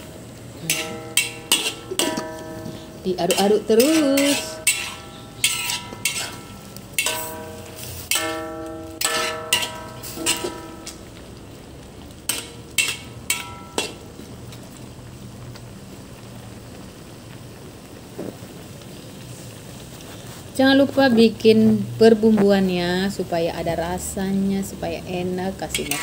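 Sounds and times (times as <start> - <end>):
low steady hum: 0.0 - 17.8
utensil clanking against metal pot: 0.6 - 11.2, 12.3 - 14.2, 25.7 - 26.0.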